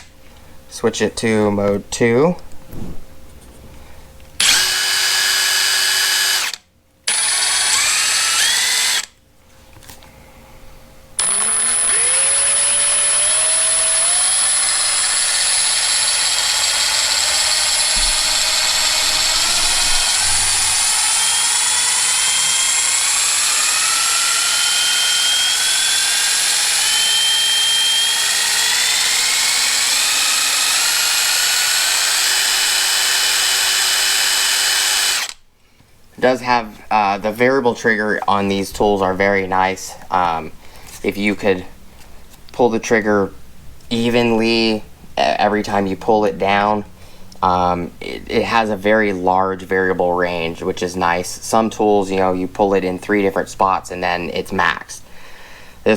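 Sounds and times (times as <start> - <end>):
impact wrench motor whining: 4.4 - 9.2, 11.2 - 35.4.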